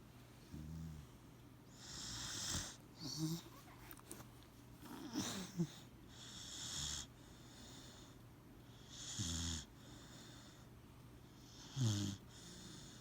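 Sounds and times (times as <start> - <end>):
puppy snoring: 0.5 - 1.1, 1.8 - 4.0, 4.8 - 8.1, 8.8 - 10.6, 11.4 - 13.0.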